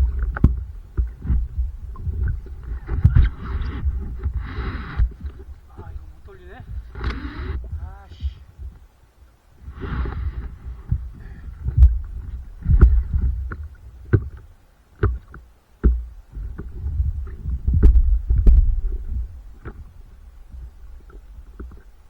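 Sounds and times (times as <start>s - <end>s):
water slapping against board: 0.0s - 8.8s
low uneven rumble: 0.0s - 22.0s
paddle splashing water: 0.0s - 22.0s.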